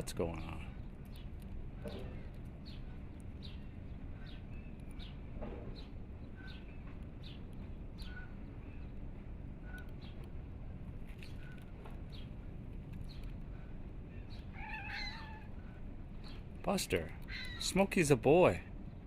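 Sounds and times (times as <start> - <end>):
outdoor background noise: 0.0 - 19.0
bird chirping: 0.3 - 9.0, 11.1 - 12.4, 13.0 - 19.0.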